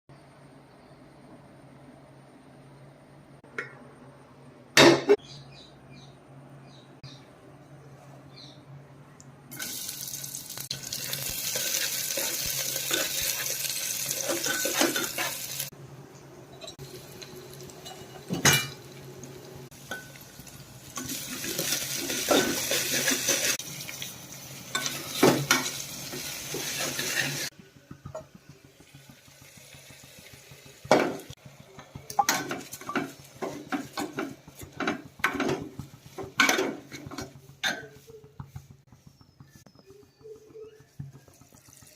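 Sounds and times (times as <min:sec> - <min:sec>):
kitchen tap running: 0:09.5 - 0:15.7, 0:16.8 - 0:38.7, 0:40.3 - 0:41.9
metal utensils clinking on pots: 0:11.0 - 0:15.7, 0:17.7 - 0:19.0, 0:19.8 - 0:23.6, 0:24.7 - 0:27.5, 0:30.8 - 0:38.2
pots and spoons clattering: 0:11.0 - 0:15.7, 0:17.6 - 0:19.0, 0:19.7 - 0:23.6, 0:24.7 - 0:28.3, 0:30.8 - 0:38.5.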